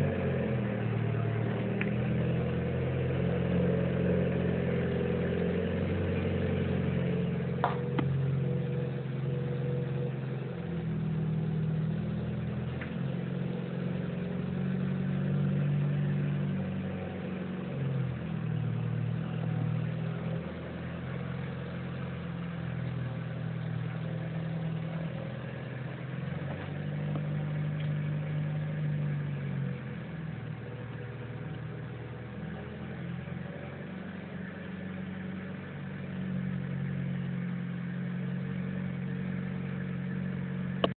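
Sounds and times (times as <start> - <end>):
car engine running: 0.0 - 40.9.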